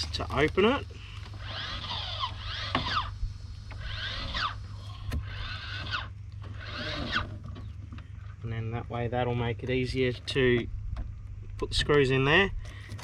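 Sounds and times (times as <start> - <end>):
roof fan crank gearing whirring: 0.0 - 7.9
steady low hum: 0.0 - 13.0.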